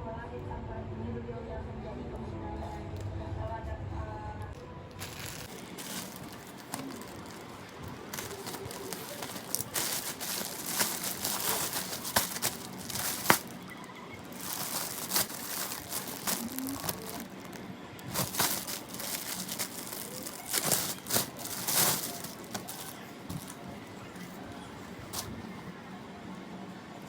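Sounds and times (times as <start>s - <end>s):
material rustling and crinkling: 4.9s - 25.6s.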